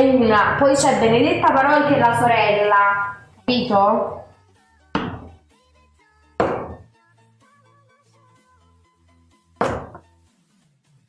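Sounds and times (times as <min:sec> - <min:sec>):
quiet background music: 0:00.0 - 0:11.0
knife chopping carrot on board: 0:05.0 - 0:05.4, 0:06.4 - 0:06.9, 0:09.6 - 0:10.0.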